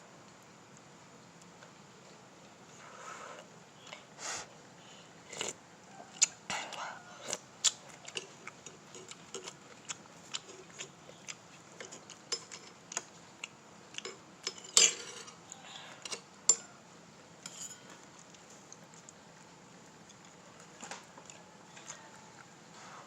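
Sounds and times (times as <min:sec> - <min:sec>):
utensils clinking against dishes: 0:11.8 - 0:12.8, 0:14.0 - 0:15.4, 0:17.4 - 0:18.0.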